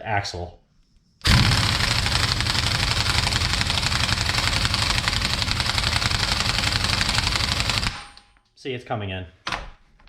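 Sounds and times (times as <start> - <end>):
impact wrench rattling: 1.2 - 8.2.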